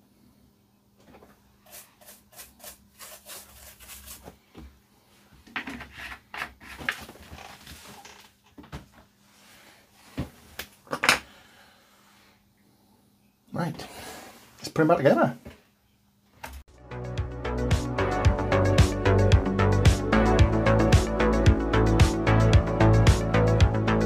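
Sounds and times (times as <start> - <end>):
tools handled on workbench: 5.4 - 8.0.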